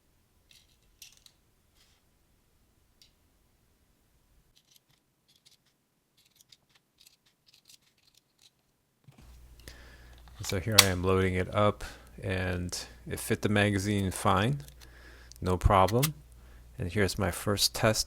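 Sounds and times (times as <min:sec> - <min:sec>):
faint small clicks and scratches: 0:00.5 - 0:02.0, 0:04.5 - 0:09.4.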